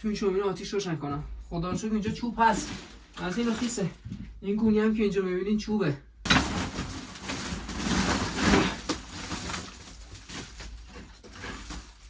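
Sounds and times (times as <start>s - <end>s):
firewood sack rustling and crunching: 2.4s - 4.0s, 6.3s - 12.0s.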